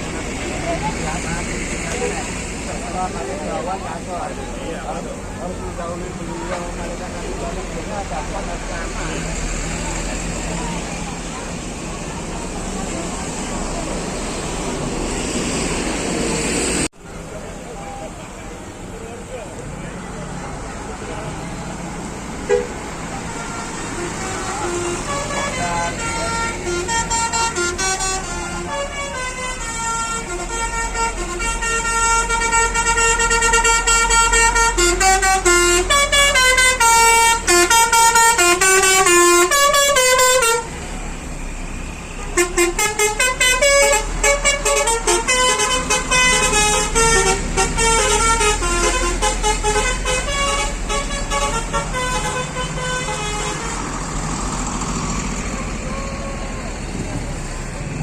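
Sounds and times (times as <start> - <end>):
bus engines rumbling: 0.0 - 58.0
musical bus horns playing tunes: 21.0 - 57.6.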